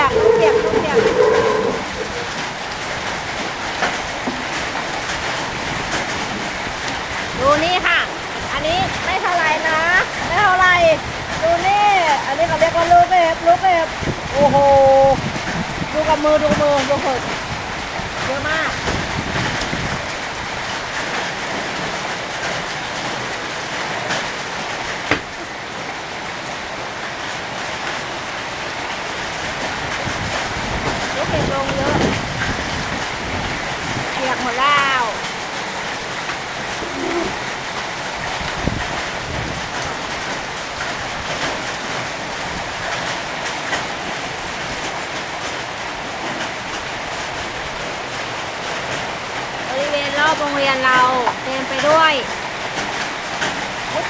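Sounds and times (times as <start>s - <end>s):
hailstones ticking: 0.0s - 54.0s
heavy rain hissing: 0.0s - 54.0s.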